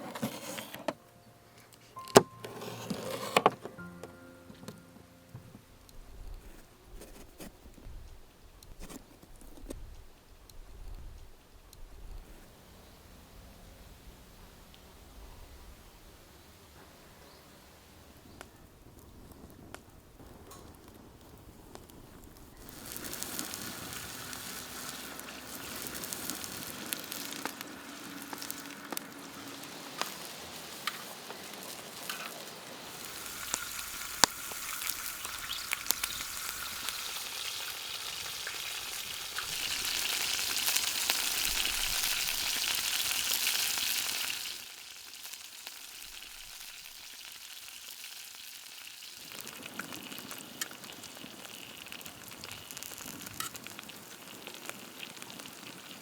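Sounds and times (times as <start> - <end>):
hot fat popping and spitting: 18.4 - 47.9, 48.8 - 56.0
sausages sizzling in a wok: 22.5 - 56.0.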